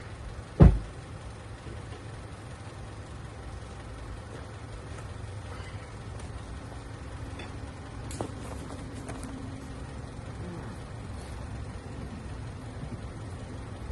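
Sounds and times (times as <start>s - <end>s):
loud thump: 0.6s - 0.9s.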